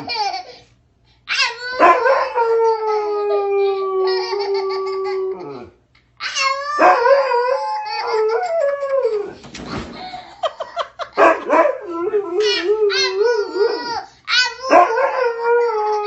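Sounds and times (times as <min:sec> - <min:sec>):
dog howling: 0:01.4 - 0:05.7, 0:06.4 - 0:09.4, 0:14.6 - 0:16.0.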